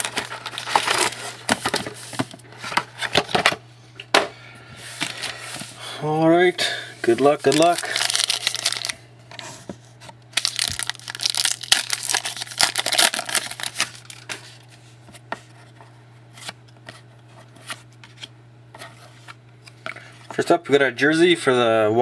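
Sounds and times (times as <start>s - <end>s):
card pack wrapper crinkling: 0.0s - 2.2s, 7.2s - 9.0s, 10.3s - 14.8s
cards clicking and rustling: 0.0s - 3.6s, 7.2s - 9.0s, 10.4s - 14.7s.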